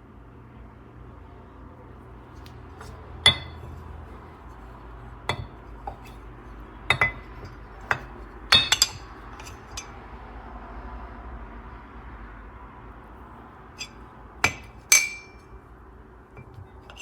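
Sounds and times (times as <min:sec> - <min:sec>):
hard parts clinking: 0:02.8 - 0:04.6, 0:05.3 - 0:06.2, 0:06.9 - 0:10.0, 0:13.8 - 0:15.6, 0:16.4 - 0:17.0.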